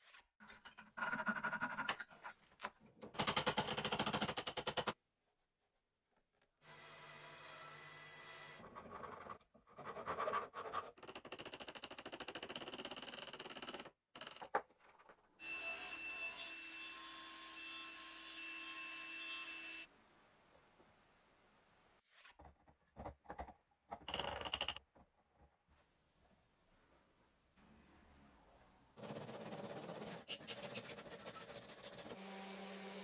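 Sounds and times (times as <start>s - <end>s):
woodworking tool whining: 32.0s - 33.0s.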